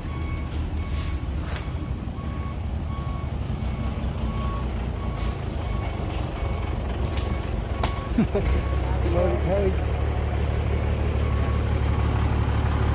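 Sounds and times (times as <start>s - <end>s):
backup alarm beeping: 0.0s - 8.9s
diesel engine rumble: 0.0s - 12.9s.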